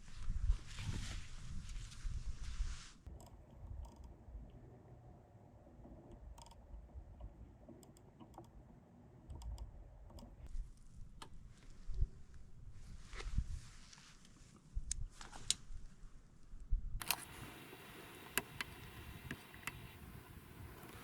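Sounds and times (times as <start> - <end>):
small rustles: 0.0 - 3.1, 10.4 - 16.2
low steady rumble: 0.0 - 14.1
faint clicks: 3.1 - 4.6, 5.8 - 8.6, 17.0 - 21.0.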